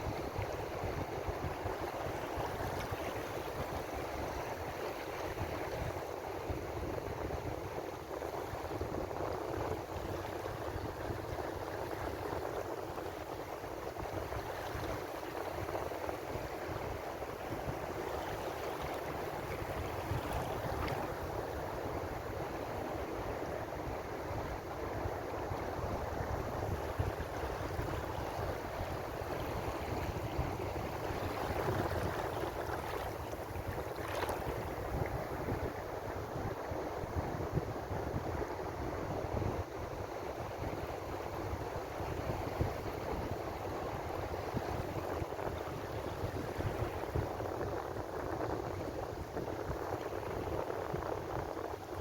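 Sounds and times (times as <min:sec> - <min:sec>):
ocean waves on shore: 0:00.0 - 0:52.0.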